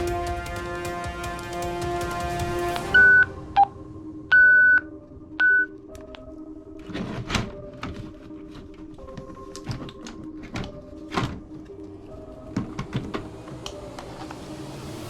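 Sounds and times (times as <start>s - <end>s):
music playing: 0.0s - 15.0s.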